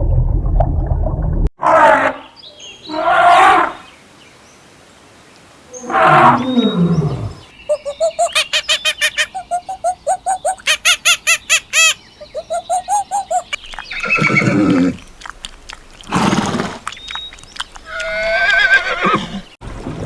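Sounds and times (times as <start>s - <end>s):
animal chirping calls: 6.3s - 19.4s.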